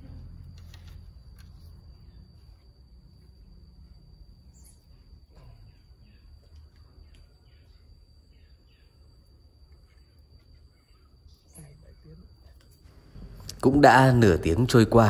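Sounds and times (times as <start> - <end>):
faint bird chirps: 0.0 - 2.7, 4.4 - 13.4
high insect tone: 0.0 - 15.0.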